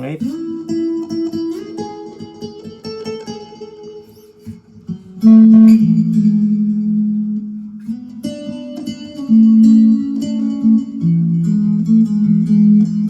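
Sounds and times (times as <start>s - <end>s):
clean electric guitar notes: 4.4s - 13.0s.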